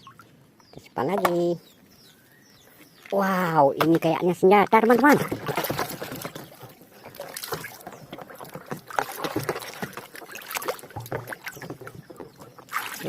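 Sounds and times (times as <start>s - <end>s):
water splashing and sloshing: 2.8s - 13.0s.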